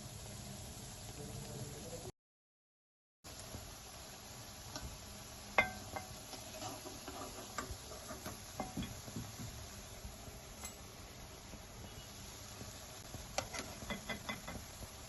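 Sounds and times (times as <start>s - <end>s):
dishes and utensils clinking: 5.6s - 9.0s, 10.6s - 10.9s, 13.4s - 14.6s.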